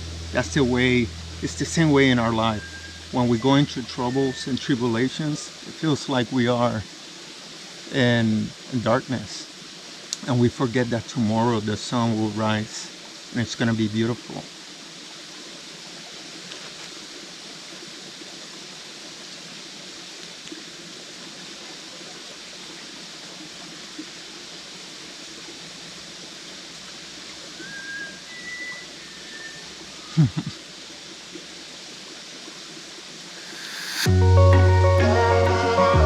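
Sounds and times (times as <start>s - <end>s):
low thumps: 0.0s - 3.4s
outdoor background hiss: 0.0s - 36.0s
bird whistling short high notes: 2.2s - 5.0s, 27.6s - 30.1s.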